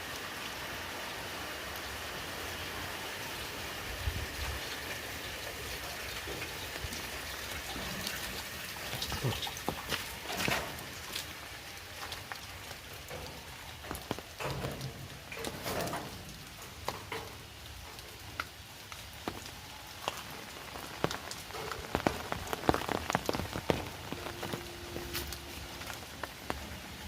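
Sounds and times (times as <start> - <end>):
heavy rain hissing: 0.0 - 27.0
sharp raindrop hits: 4.4 - 27.0.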